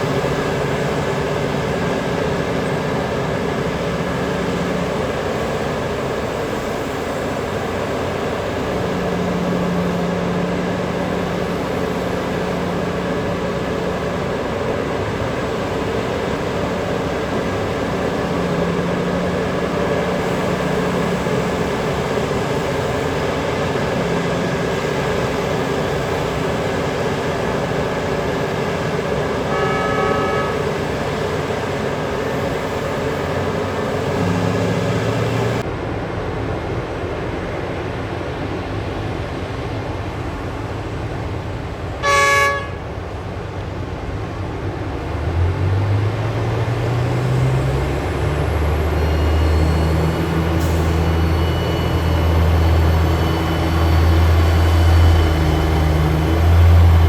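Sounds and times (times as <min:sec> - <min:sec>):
heavy machinery diesel engines: 0:00.0 - 0:57.0
loud horn blast: 0:29.3 - 0:31.0, 0:42.0 - 0:43.0
faint short horn toot: 0:29.5 - 0:30.6, 0:42.0 - 0:42.9.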